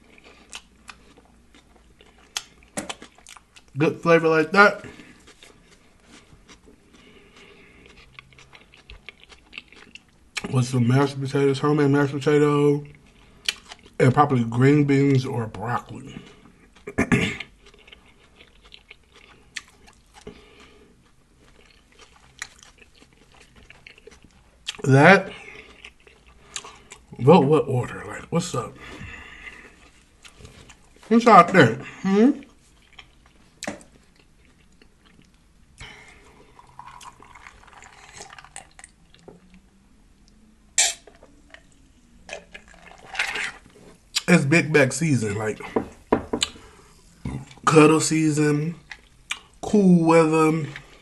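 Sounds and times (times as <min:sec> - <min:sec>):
person chewing food: 0:00.0 - 0:03.8, 0:04.8 - 0:10.5, 0:12.8 - 0:14.0, 0:16.0 - 0:27.2, 0:28.9 - 0:31.0, 0:32.4 - 0:44.3, 0:45.6 - 0:47.7, 0:48.8 - 0:49.7
lip smacks: 0:46.4 - 0:46.6.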